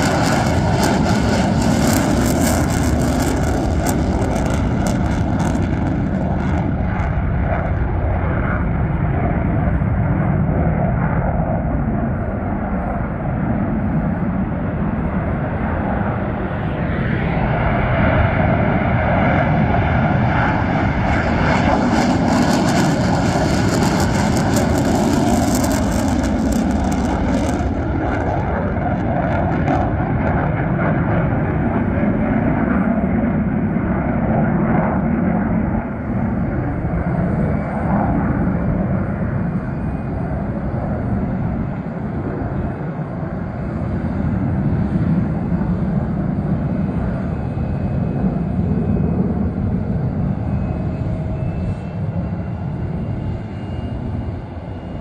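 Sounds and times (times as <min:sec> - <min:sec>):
jet engines roaring on takeoff: 0:00.0 - 0:55.0
crackling hiss of jet passing: 0:21.2 - 0:29.0.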